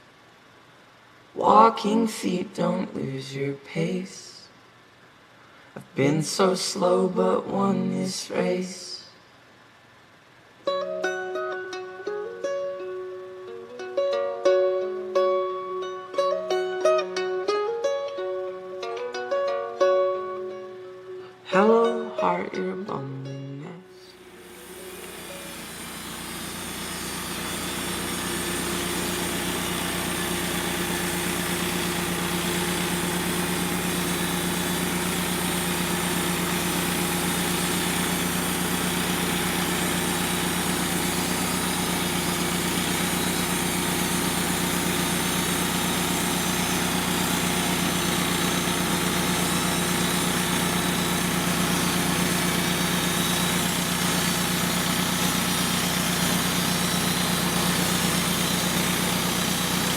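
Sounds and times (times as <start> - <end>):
sawmill engine running: 24.2 - 59.9.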